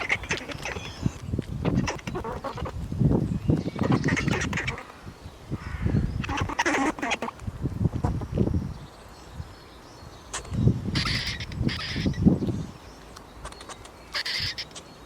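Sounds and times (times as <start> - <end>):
squirrel barking calls: 0.0 - 2.8, 3.5 - 5.0, 5.6 - 8.3, 10.3 - 12.3, 13.5 - 14.8.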